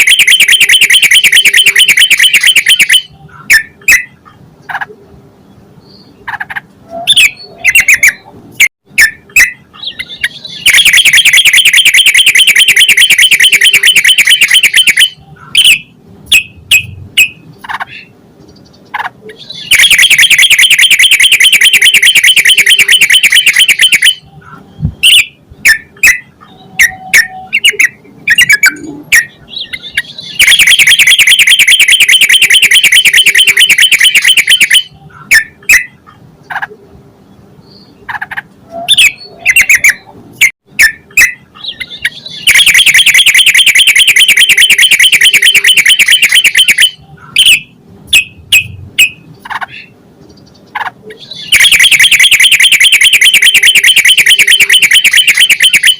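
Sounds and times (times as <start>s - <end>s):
bird chattering trills: 6.2s - 8.3s, 9.0s - 36.7s, 40.8s - 55.8s
sharp bird notes: 9.0s - 18.1s, 19.4s - 35.9s, 40.8s - 49.9s, 51.2s - 55.4s.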